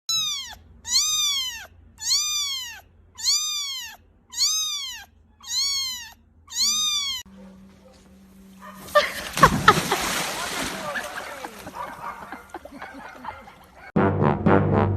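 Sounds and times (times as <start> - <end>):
cat meowing: 0.1 - 7.3.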